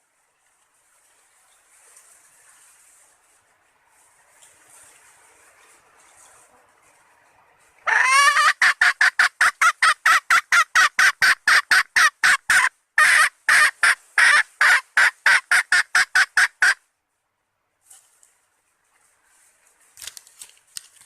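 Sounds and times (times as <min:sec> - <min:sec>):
hen clucking: 0:07.9 - 0:16.8.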